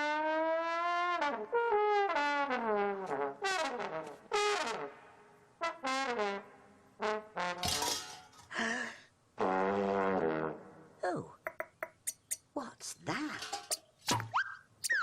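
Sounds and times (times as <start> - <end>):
trombone sliding notes and blasts: 0.0 - 5.0, 5.6 - 8.0, 9.4 - 10.9.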